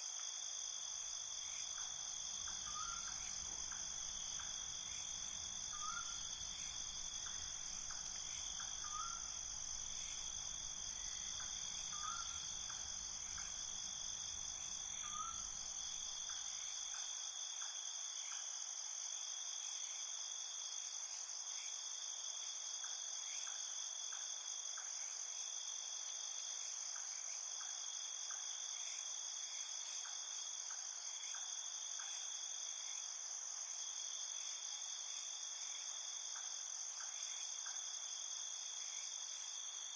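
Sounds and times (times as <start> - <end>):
crickets trilling: 0.0 - 18.0
faint ticking insect calls: 0.0 - 39.9.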